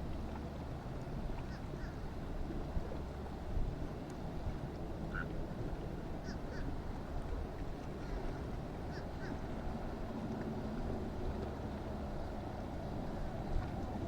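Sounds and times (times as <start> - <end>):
wind and water rumble: 0.0 - 14.0
boat engine running: 6.8 - 14.0.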